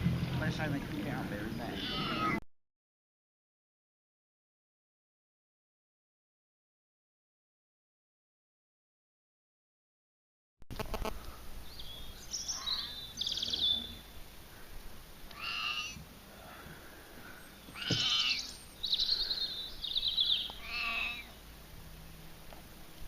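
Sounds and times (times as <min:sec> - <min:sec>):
animal high-pitched cries: 0:01.7 - 0:02.4, 0:15.3 - 0:16.0, 0:17.7 - 0:19.5, 0:20.3 - 0:21.4.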